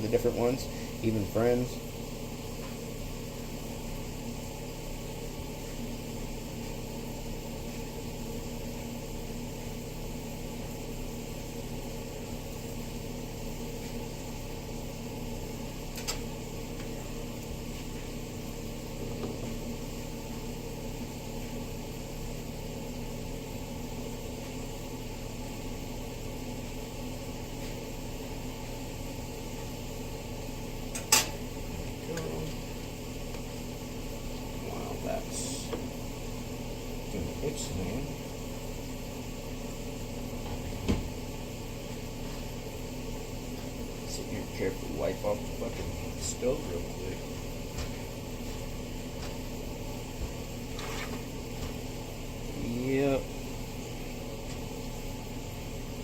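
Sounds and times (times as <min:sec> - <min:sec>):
kitchen appliance humming: 0:00.0 - 0:56.0.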